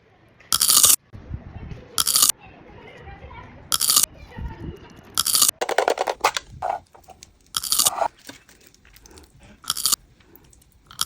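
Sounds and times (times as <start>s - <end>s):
crunching bites of food: 2.0s - 2.3s, 3.8s - 4.1s, 6.9s - 11.0s.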